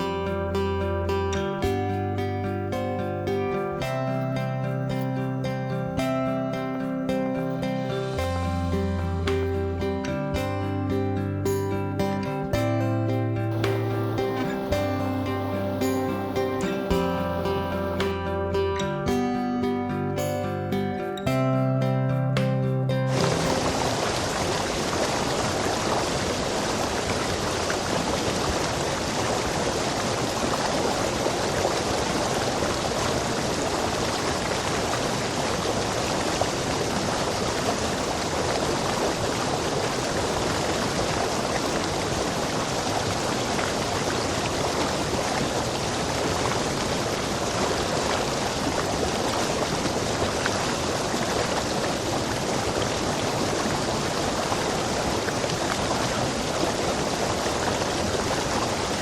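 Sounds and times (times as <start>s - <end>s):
stream rushing over rocks: 13.5s - 18.2s, 23.1s - 59.0s.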